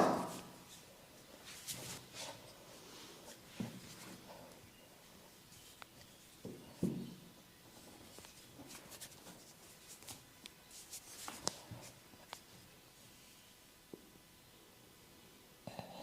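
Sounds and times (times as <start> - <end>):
hands rubbing and patting skin: 8.1 - 12.5.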